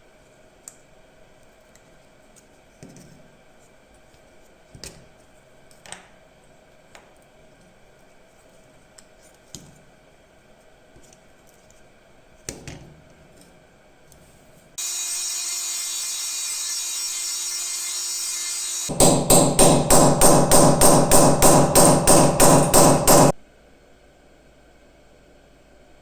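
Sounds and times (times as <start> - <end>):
knock: 18.9 - 23.3
hammer blows: 18.9 - 23.4.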